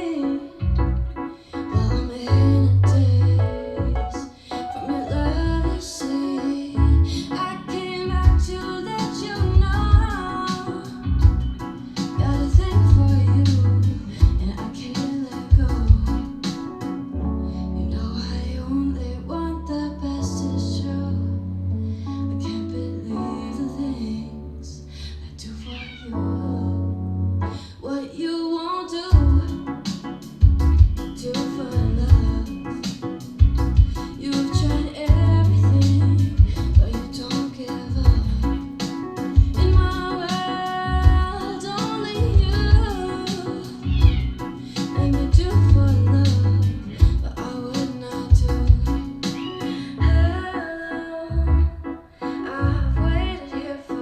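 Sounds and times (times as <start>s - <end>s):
sung melody over bass: 0.0s - 16.4s, 17.1s - 25.4s, 29.1s - 49.2s, 50.0s - 51.9s, 52.6s - 53.5s
heavy kick drum hits: 9.6s - 10.2s, 11.2s - 11.5s, 29.2s - 29.4s, 30.4s - 31.0s, 32.1s - 32.4s, 33.4s - 34.0s, 36.4s - 37.0s.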